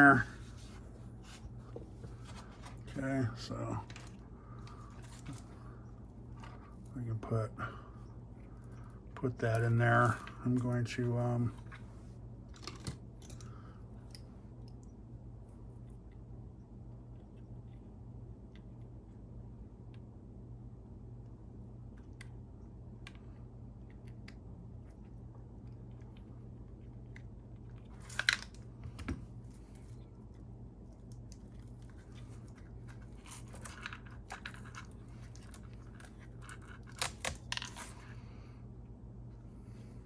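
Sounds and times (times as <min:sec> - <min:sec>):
steady low hum: 0:00.0 - 0:40.0
small plastic clicks and crunches: 0:12.5 - 0:14.9, 0:30.9 - 0:38.0.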